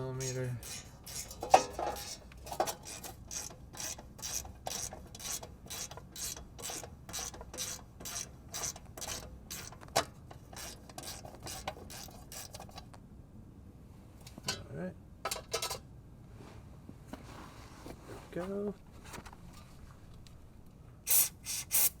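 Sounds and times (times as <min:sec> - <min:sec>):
hand ratchet clicking: 0:00.6 - 0:09.8.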